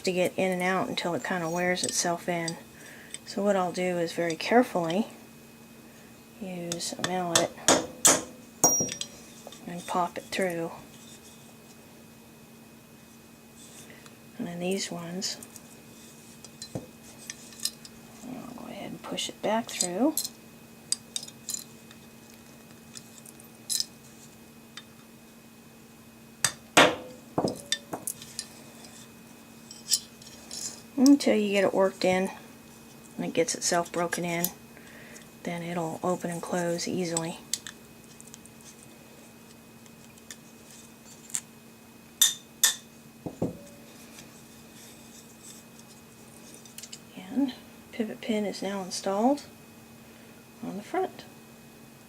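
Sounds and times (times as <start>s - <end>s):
sharp metallic knocks ringing: 7.7s - 9.1s.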